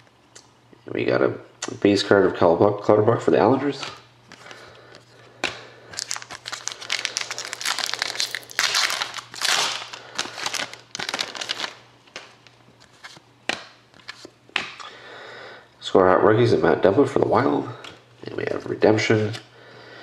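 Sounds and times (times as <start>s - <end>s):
wrapper crinkling: 5.9s - 13.2s.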